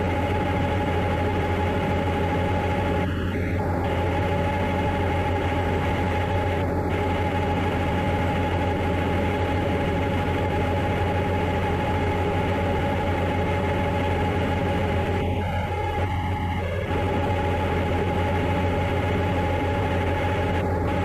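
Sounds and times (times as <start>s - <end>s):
diesel farm machinery humming: 0.0s - 21.0s
steady machine whine: 0.0s - 21.0s.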